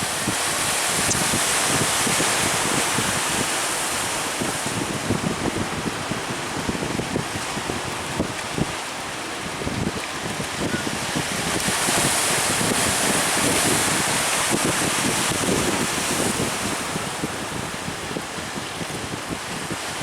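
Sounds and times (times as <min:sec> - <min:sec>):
sea surf breaking: 0:00.0 - 0:20.0
wind buffeting microphone: 0:00.0 - 0:20.0.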